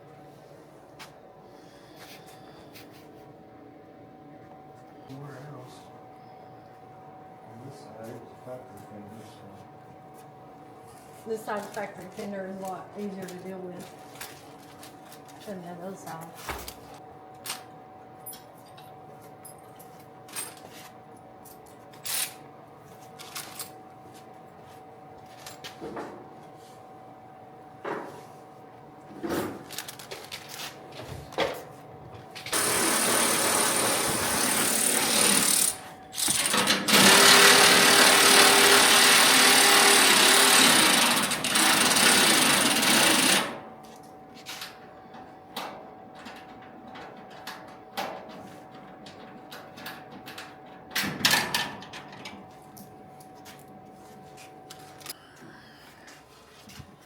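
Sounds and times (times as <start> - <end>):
pneumatic air tool running: 32.5 - 43.5.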